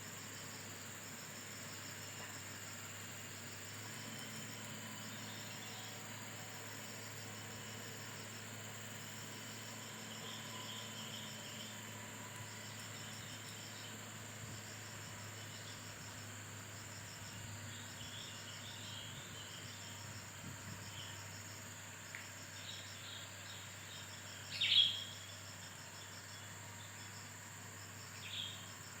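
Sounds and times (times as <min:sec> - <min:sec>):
insect pulsing trill: 0:00.0 - 0:21.4, 0:22.6 - 0:27.2
insects chirping: 0:00.0 - 0:29.0
bird chirps: 0:24.6 - 0:25.1.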